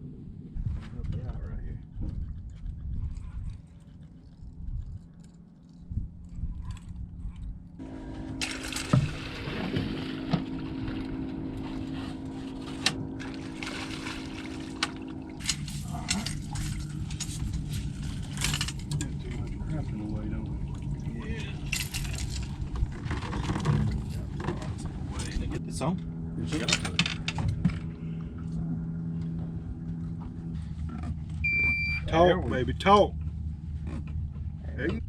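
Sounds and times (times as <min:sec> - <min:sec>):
boat motor humming: 0:01.8 - 0:35.0
water splashing: 0:08.4 - 0:18.4, 0:19.0 - 0:22.7.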